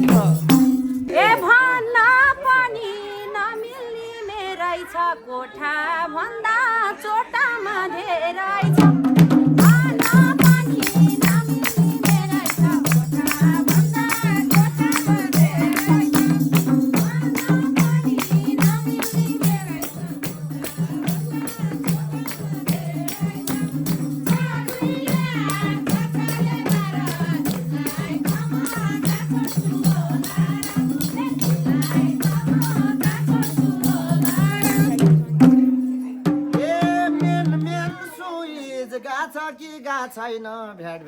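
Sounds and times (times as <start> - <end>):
folk music with percussion: 0.0 - 3.1, 8.6 - 38.2.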